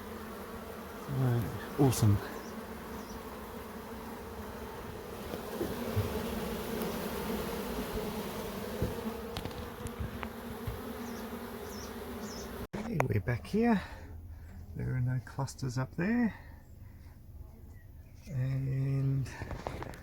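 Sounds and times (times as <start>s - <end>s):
bees buzzing: 0.0s - 12.9s.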